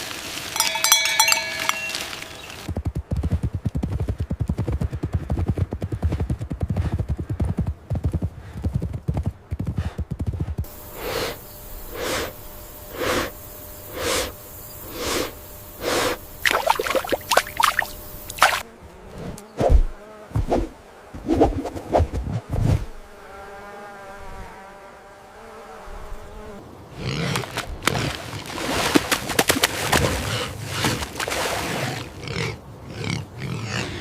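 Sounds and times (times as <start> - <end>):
horse hooves clattering: 0.0 - 10.8
rhythmic hissing: 10.6 - 18.6.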